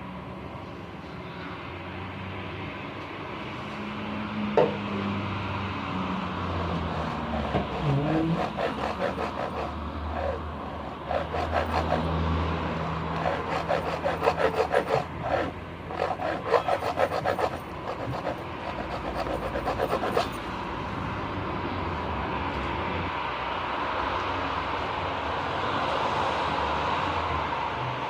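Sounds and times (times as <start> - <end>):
hand tool rasping: 6.7 - 20.5.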